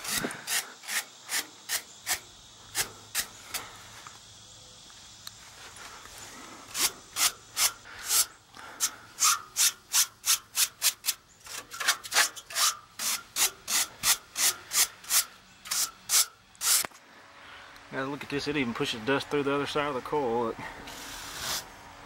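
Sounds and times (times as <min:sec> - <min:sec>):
stiff brush scraping metal fins: 0:06.7 - 0:16.9.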